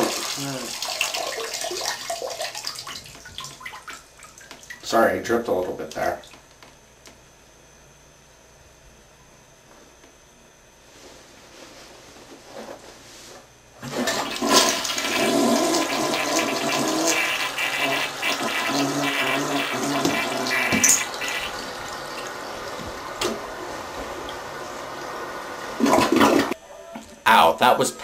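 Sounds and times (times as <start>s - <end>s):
toilet flushing: 0.0s - 4.8s, 13.8s - 26.6s
water running steadily: 0.0s - 5.0s, 13.8s - 26.6s.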